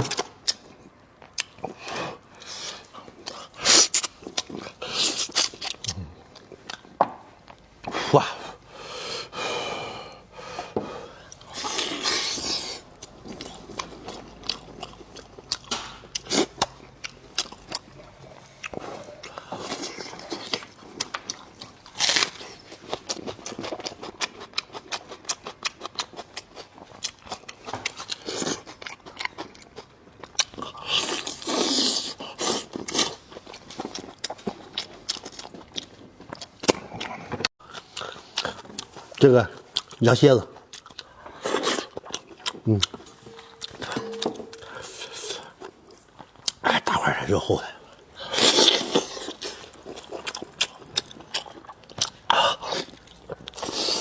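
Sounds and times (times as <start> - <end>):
chewing and lip-smacking: 0.0 - 7.9, 11.2 - 46.8, 47.8 - 54.0.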